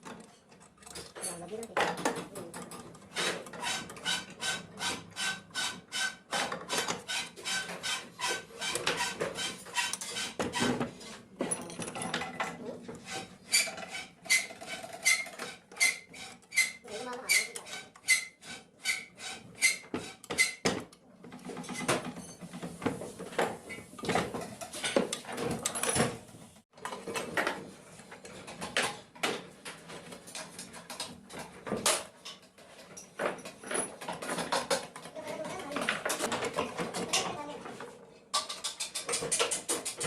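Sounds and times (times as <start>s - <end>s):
metal scraping and clattering: 0.0s - 20.6s.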